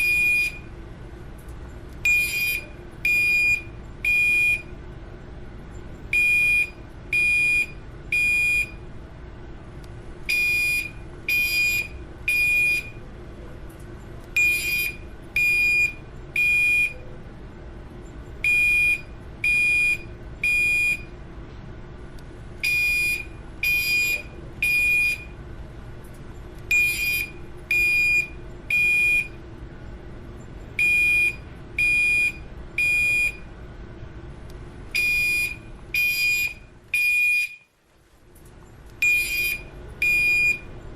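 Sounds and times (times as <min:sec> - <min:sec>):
fire alarm beeping: 0:00.0 - 0:00.7, 0:02.0 - 0:04.8, 0:06.1 - 0:08.9, 0:10.3 - 0:13.0, 0:14.4 - 0:17.0, 0:18.4 - 0:21.1, 0:22.6 - 0:25.4, 0:26.7 - 0:29.4, 0:30.8 - 0:33.5, 0:35.0 - 0:37.8, 0:39.0 - 0:40.7.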